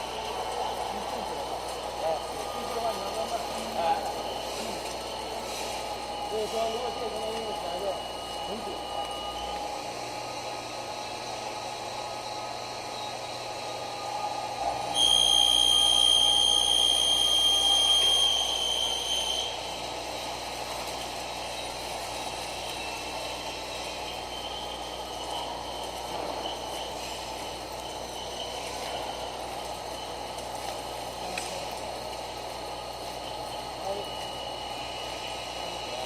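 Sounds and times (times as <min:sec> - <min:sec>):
milling machine running: 0:00.0 - 0:36.0
high-pitched squeal of tool cutting: 0:14.9 - 0:19.6, 0:22.6 - 0:30.2.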